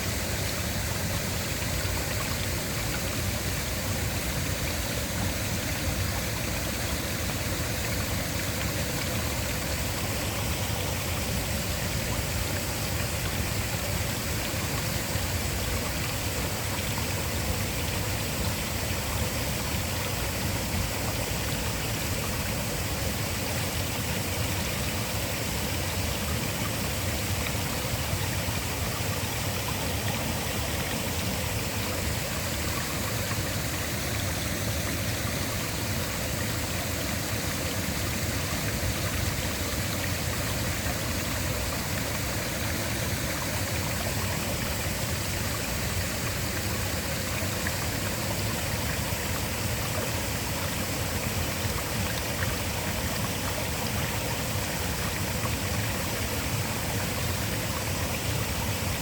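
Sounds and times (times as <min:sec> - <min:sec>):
waterfall rushing: 0:00.0 - 0:59.0.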